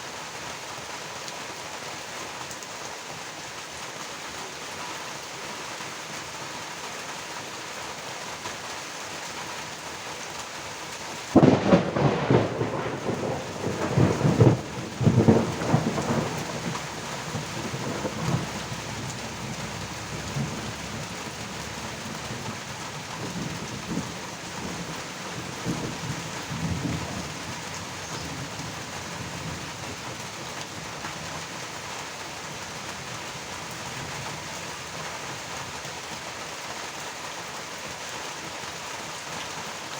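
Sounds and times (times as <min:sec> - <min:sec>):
steady rain: 0:00.0 - 0:39.9
thunder rumbling: 0:11.3 - 0:30.2.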